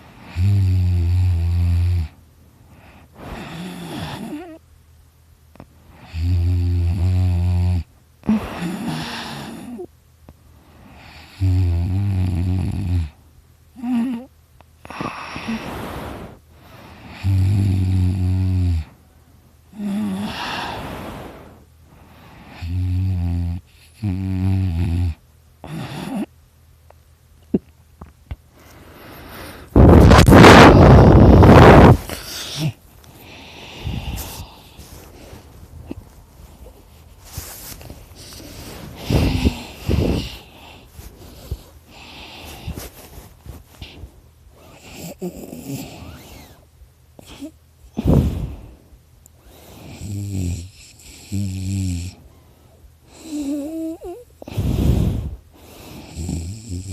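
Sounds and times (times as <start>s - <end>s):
person snoring: 0.2s - 2.2s, 3.2s - 4.6s, 6.0s - 9.9s, 10.9s - 13.2s, 14.9s - 16.4s, 17.0s - 18.9s, 19.7s - 21.6s, 22.4s - 26.3s, 29.0s - 35.0s, 38.1s - 42.9s, 44.6s - 46.6s, 47.2s - 48.7s, 49.8s - 52.2s, 53.1s - 56.9s
quiet breathing: 2.0s - 4.6s, 13.1s - 17.4s, 18.1s - 22.8s, 28.3s - 29.9s, 31.0s - 51.4s, 52.1s - 56.9s.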